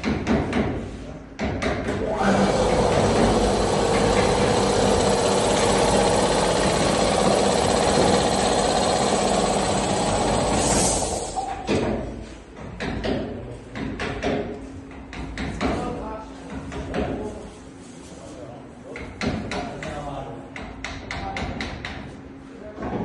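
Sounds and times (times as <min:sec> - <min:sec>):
machine running: 0:02.0 - 0:11.8.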